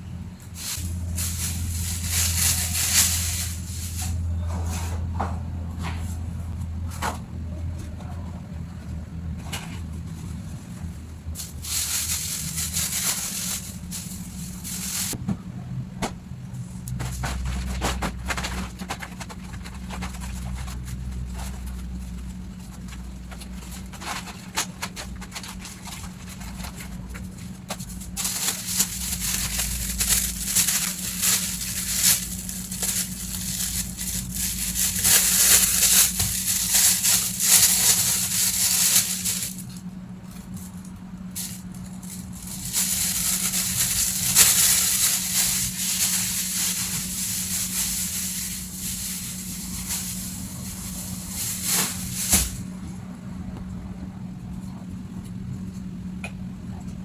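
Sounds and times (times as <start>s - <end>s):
plastic bags crinkling: 0.5s - 4.2s, 11.4s - 15.2s, 23.6s - 52.7s.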